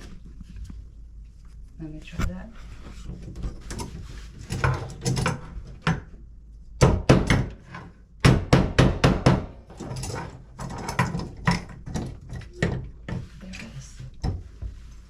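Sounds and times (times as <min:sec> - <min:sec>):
hammer tapping wall anchor: 0:06.8 - 0:09.6.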